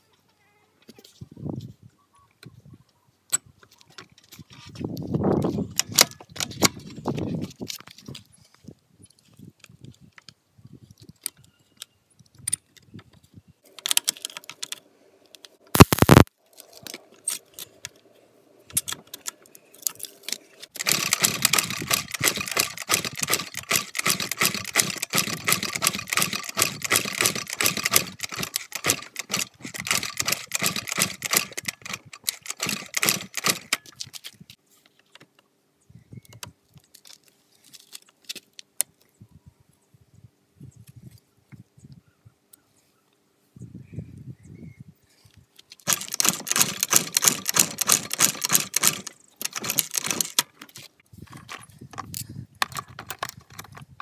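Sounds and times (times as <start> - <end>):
rapid clicking and rattling: 20.7 - 34.0, 45.8 - 50.7.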